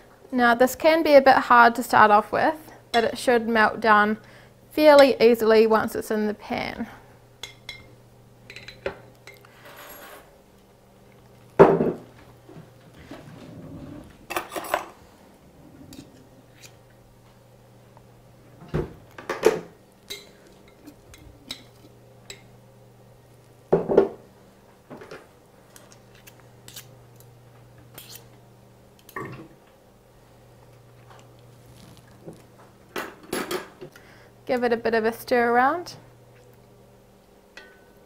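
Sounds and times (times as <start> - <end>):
low steady hum: 0.0 - 38.0
utensil scraping frying pan: 27.9 - 28.3.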